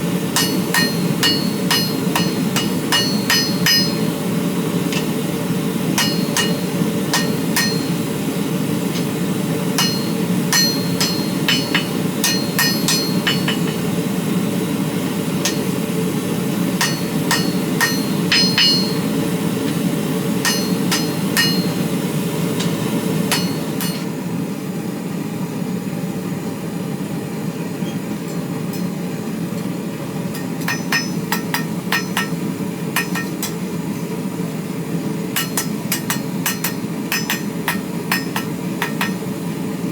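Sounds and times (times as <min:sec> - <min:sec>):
hammer blows on anvil: 0:00.2 - 0:04.3, 0:05.9 - 0:08.3, 0:09.0 - 0:14.3, 0:15.2 - 0:16.0, 0:16.7 - 0:24.1, 0:30.3 - 0:33.7, 0:35.3 - 0:39.4.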